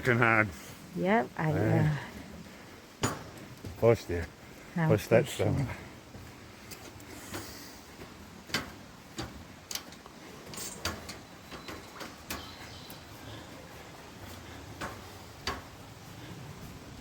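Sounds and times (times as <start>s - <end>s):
faint steady hiss: 0.0s - 17.0s
footsteps knocks and clicks: 2.8s - 4.4s, 5.6s - 17.0s.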